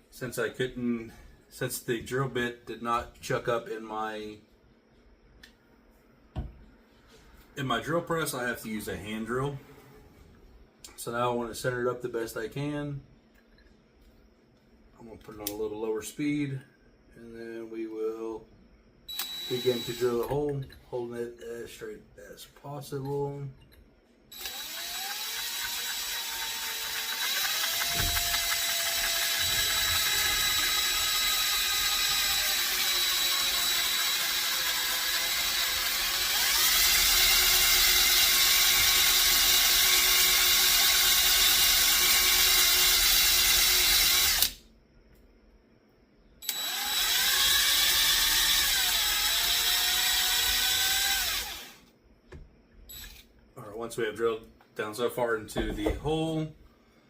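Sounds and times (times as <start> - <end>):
electric drill whining: 19.1 - 20.4, 24.3 - 44.6, 46.4 - 51.8, 52.9 - 53.2.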